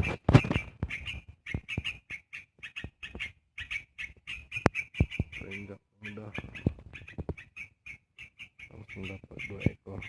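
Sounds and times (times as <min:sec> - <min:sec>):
small bird harsh calls: 0:00.0 - 0:10.0.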